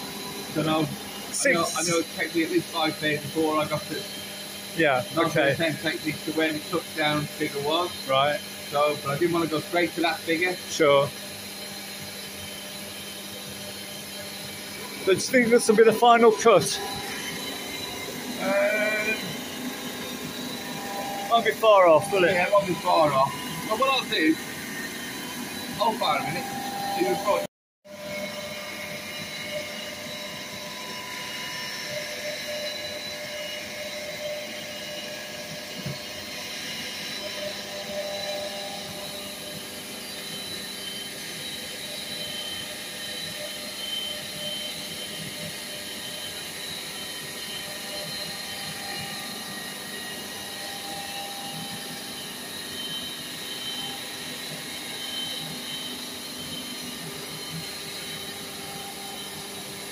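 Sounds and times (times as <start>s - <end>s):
resurfacing machine running: 0.0s - 59.9s.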